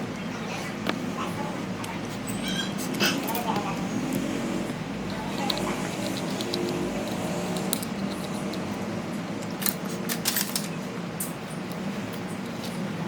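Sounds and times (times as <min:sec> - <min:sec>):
steady low hum: 0:00.0 - 0:13.0
hand tools clicking and tapping: 0:02.2 - 0:08.8.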